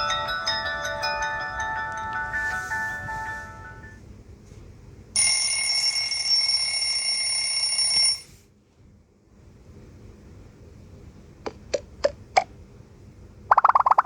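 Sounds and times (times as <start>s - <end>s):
high-pitched electronic ringtone: 0.0s - 4.0s, 13.5s - 14.0s.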